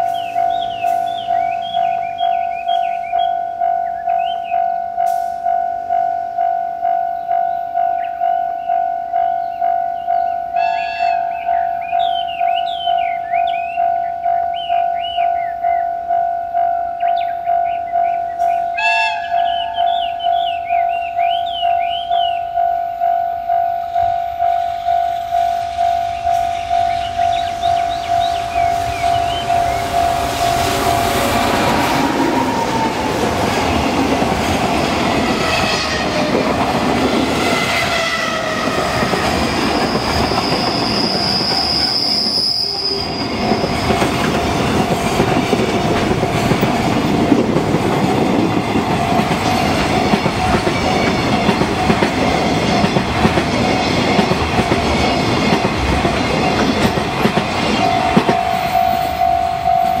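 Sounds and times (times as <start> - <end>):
wheels clacking on rail joints: 0.0 - 8.0, 24.4 - 60.0
crossing alarm ringing tone: 0.0 - 60.0
train rumble: 0.0 - 60.0
high wheel squeal: 24.6 - 44.8.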